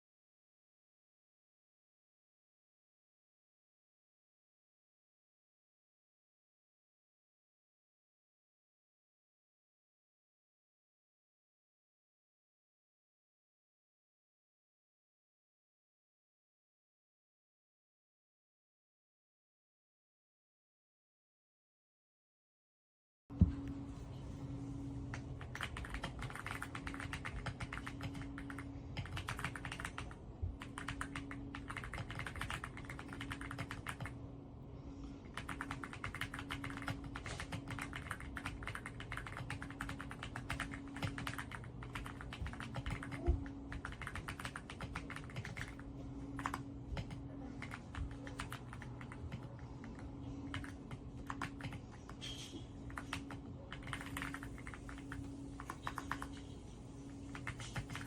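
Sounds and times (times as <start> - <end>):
fast typing on mechanical keyboard: 25.1 - 34.2, 35.3 - 52.1, 52.9 - 56.5, 57.3 - 58.0.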